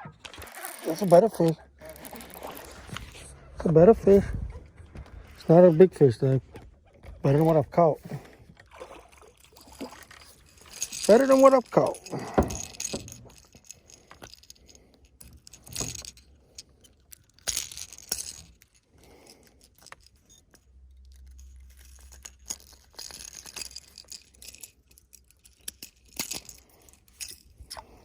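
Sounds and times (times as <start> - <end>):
metallic jangling and clinks: 0.4 - 3.3, 9.4 - 27.7.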